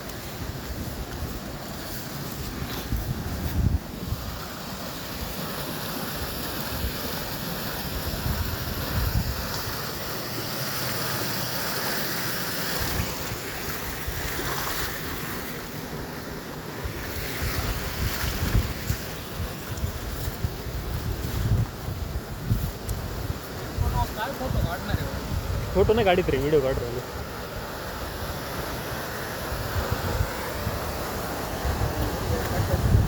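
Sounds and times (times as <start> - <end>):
wind buffeting microphone: 2.2 - 4.4, 16.9 - 33.0
steady rushing hiss: 18.4 - 33.0.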